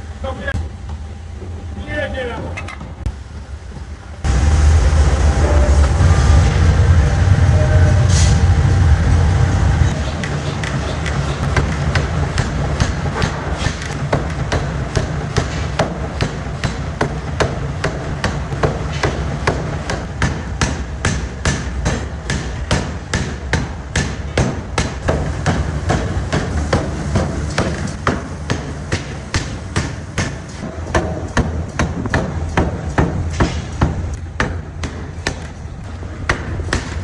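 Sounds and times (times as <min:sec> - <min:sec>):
low machine drone: 0:00.0 - 0:37.0
forging hammer striking steel: 0:09.9 - 0:37.0.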